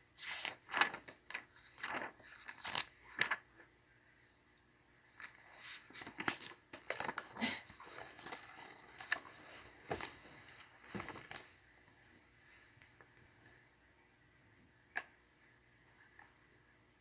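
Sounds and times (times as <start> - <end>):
paper rustling and crinkling: 0.2 - 3.5, 5.1 - 11.6.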